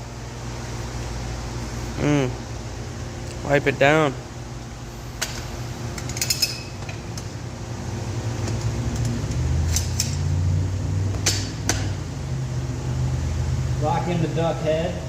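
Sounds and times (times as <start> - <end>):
metal tools clinking: 6.0 - 6.8.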